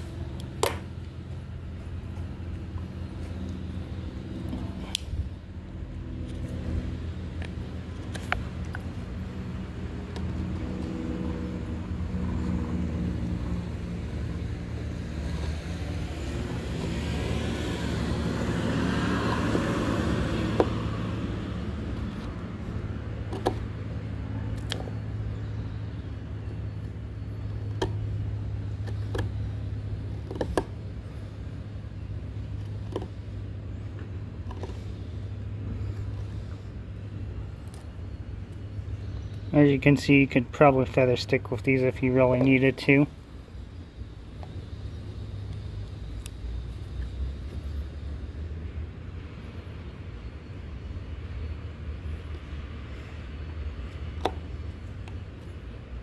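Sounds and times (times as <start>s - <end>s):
vehicle passing: 0.0s - 37.6s
motor vehicle humming: 0.0s - 56.0s
knife carving wood: 18.7s - 23.7s, 27.2s - 31.3s, 32.4s - 33.8s, 34.4s - 35.1s.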